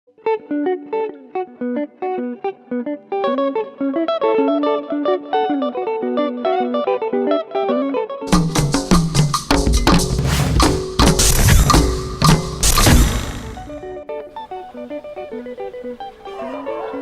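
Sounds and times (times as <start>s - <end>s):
plucked guitar melody: 0.2s - 10.1s
drums and percussion: 8.3s - 14.0s.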